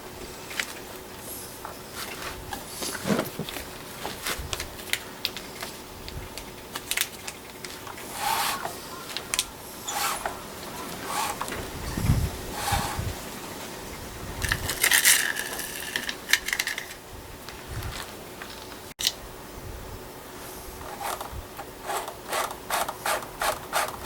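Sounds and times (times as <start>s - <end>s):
short scraping rubs: 2.0s - 3.6s, 8.0s - 9.1s, 9.8s - 13.2s.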